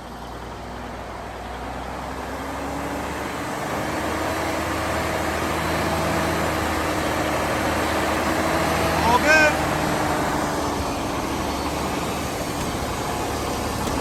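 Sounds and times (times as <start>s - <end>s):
truck engine running: 0.0s - 14.0s.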